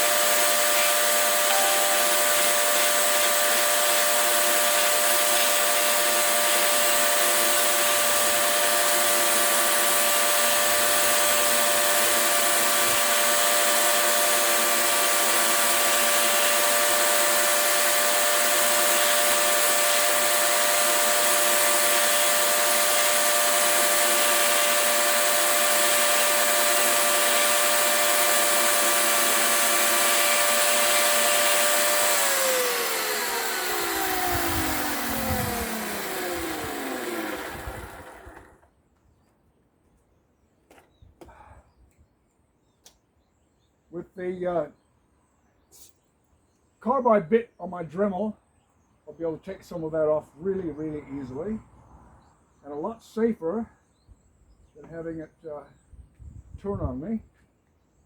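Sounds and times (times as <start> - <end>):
electric power tool running: 0.0 - 38.7
motor winding down: 0.0 - 38.7.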